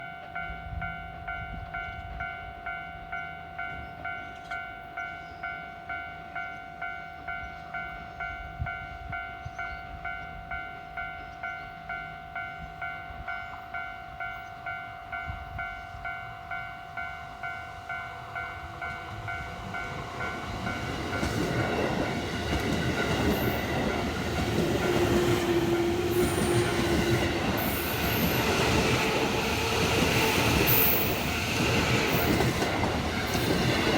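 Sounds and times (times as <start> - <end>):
level-crossing warning bell: 0.0 - 33.9
train wheel and running noise: 18.7 - 33.9.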